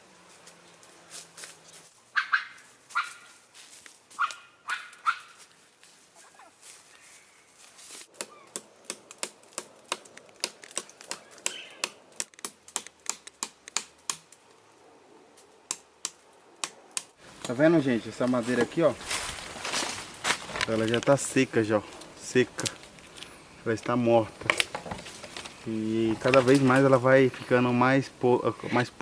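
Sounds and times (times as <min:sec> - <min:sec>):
dog barking: 0:02.2 - 0:03.3, 0:04.2 - 0:05.4
sharp snaps and clicks: 0:08.9 - 0:14.4.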